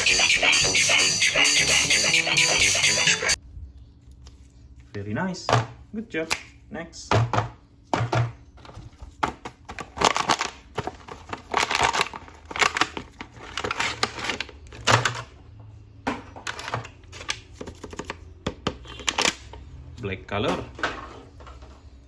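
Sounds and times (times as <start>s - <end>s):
packaging crinkling and rustling: 8.6s - 15.3s.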